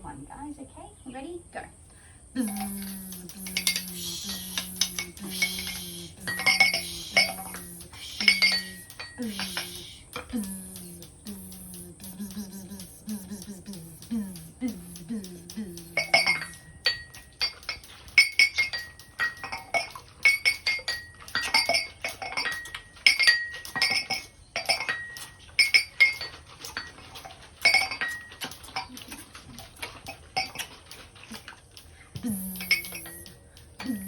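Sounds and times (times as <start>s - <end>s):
low hummed voice tone: 2.2s - 17.0s, 31.2s - 34.0s
hand percussion clinking: 2.4s - 34.0s.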